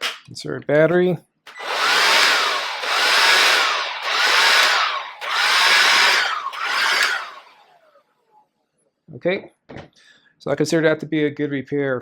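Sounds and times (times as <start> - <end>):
blower fan whirring: 1.5 - 7.9.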